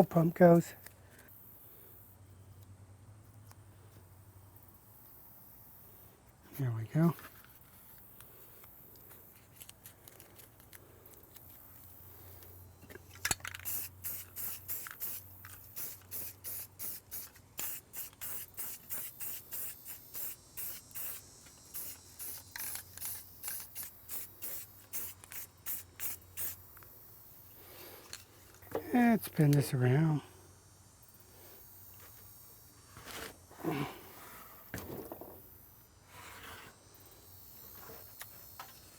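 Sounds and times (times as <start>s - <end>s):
aerosol can spraying in bursts: 13.6s - 26.8s.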